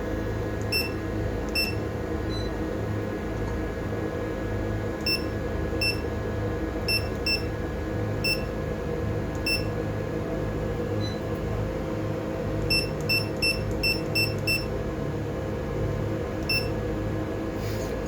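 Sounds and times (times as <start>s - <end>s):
low machinery hum: 0.0s - 18.0s
high-pitched keypad beeps: 9.5s - 9.7s, 12.7s - 14.7s, 16.5s - 16.7s.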